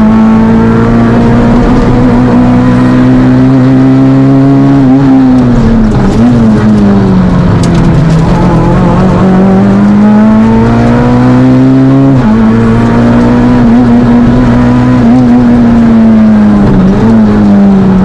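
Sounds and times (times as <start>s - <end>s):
rally car engine accelerating: 0.0s - 18.0s.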